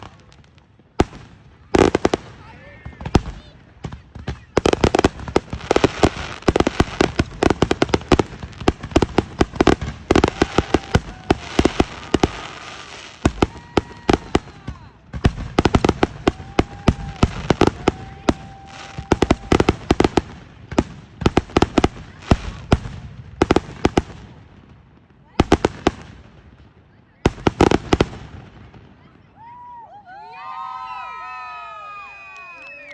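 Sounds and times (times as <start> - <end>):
fireworks bangs and booms: 0.0 - 29.8
fireworks whistling: 1.1 - 20.4.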